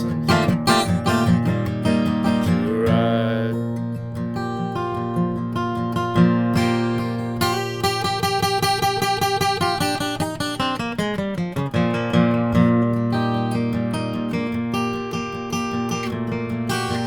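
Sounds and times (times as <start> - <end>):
picked acoustic guitar: 0.0 - 17.0.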